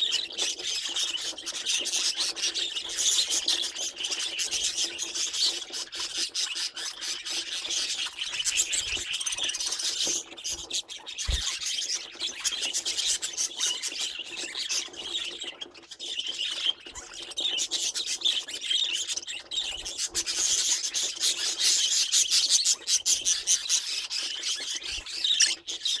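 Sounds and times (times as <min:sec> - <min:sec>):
budgerigars chattering: 0:00.0 - 0:26.0.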